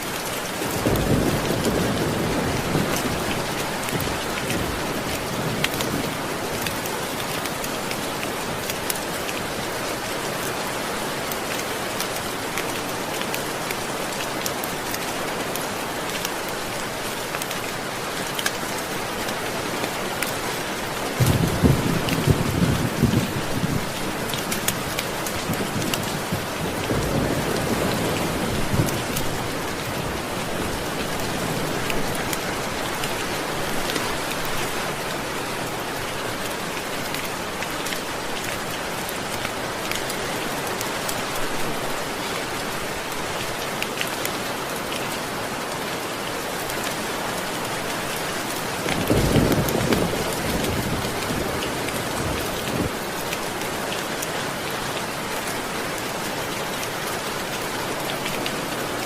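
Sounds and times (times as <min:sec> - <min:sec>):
heavy rain: 0:00.0 - 0:59.0
low rolls of thunder: 0:21.2 - 0:23.9.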